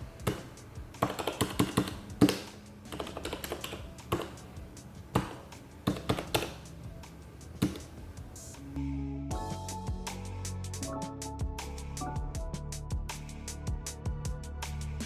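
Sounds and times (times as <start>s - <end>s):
mechanical keys tapping: 0.0s - 8.7s
background music: 0.0s - 15.0s.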